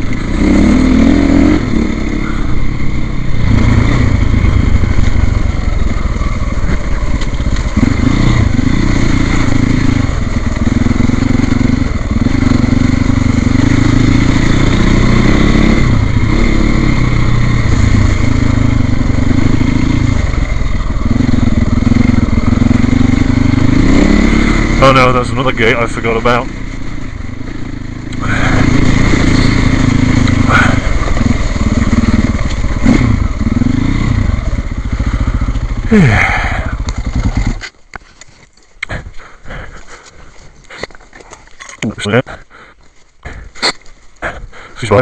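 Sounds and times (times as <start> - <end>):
motorcycle engine revving: 0.0 - 45.0.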